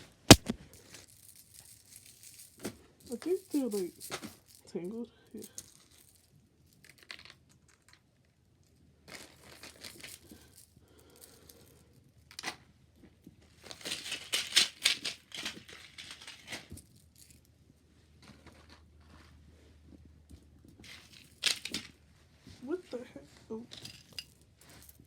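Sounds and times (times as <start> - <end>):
packaging crinkling: 0.3 - 4.6
beads rattling and clicking: 0.3 - 4.7, 5.3 - 8.1, 9.2 - 11.7, 13.7 - 17.5, 20.8 - 22.0.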